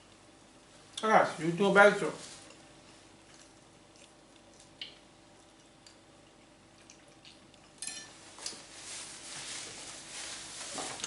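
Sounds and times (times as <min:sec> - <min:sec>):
person chewing: 0:02.4 - 0:07.8
mouth smacks and clicks: 0:04.0 - 0:05.0.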